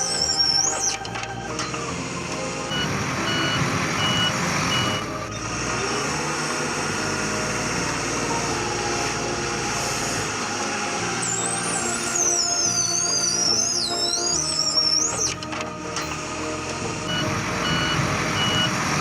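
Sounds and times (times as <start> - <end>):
truck engine running: 0.0 - 19.0
reversing alarm beeping: 2.6 - 6.1, 17.0 - 18.8.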